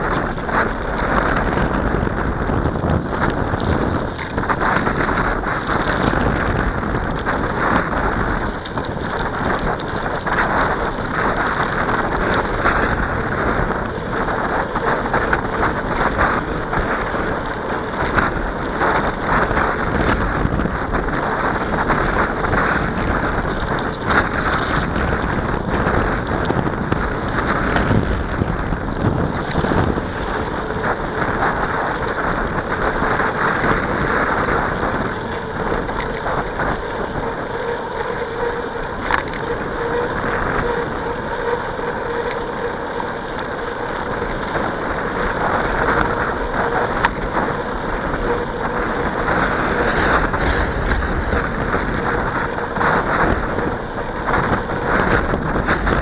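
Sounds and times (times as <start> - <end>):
wind rushing over microphone: 0.0 - 56.0.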